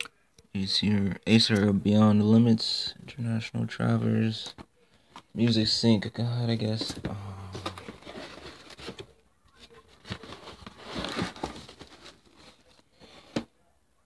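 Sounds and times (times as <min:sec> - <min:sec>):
paper rustling and crinkling: 0:06.6 - 0:13.5.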